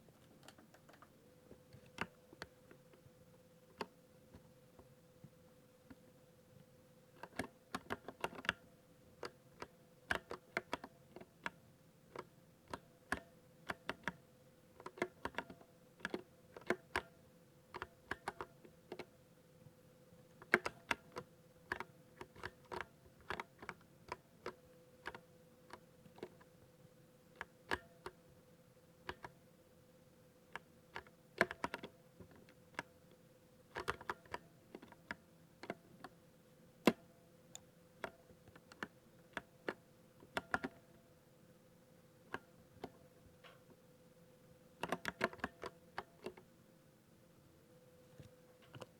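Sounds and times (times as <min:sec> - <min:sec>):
mechanical keyboard typing: 0:07.2 - 0:08.6, 0:20.4 - 0:23.8, 0:30.6 - 0:32.9, 0:33.8 - 0:36.2.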